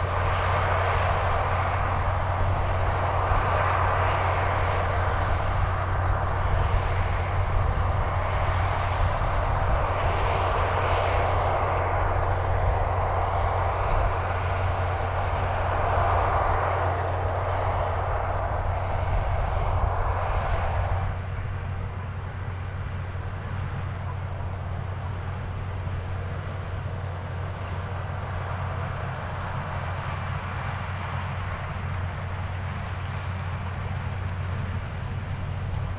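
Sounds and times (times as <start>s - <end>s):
rushing noise: 0.0s - 23.8s
combine engine drone: 0.0s - 35.9s.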